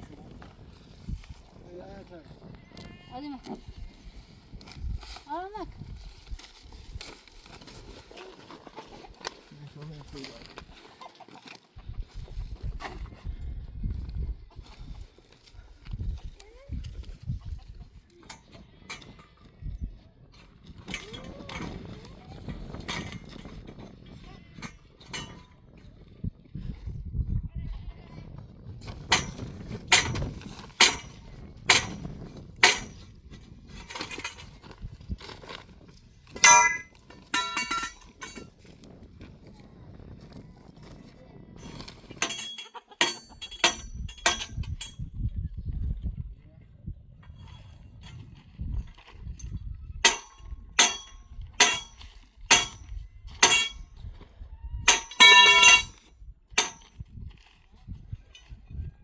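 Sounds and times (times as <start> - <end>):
sharp clinking knocks: 29.1 - 32.0, 32.6 - 33.0, 36.4 - 38.5, 42.2 - 45.0, 50.0 - 53.8, 54.9 - 56.0, 56.6 - 56.9.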